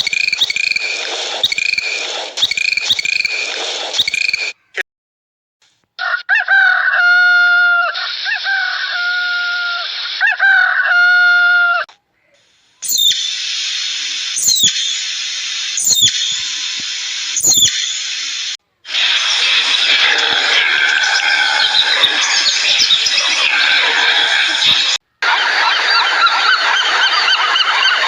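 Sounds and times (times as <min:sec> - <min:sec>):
sharp clicks: 0:00.0 - 0:04.6
steady hissing: 0:00.0 - 0:04.7, 0:12.4 - 0:25.0
bird calling: 0:00.0 - 0:04.8, 0:12.0 - 0:28.0.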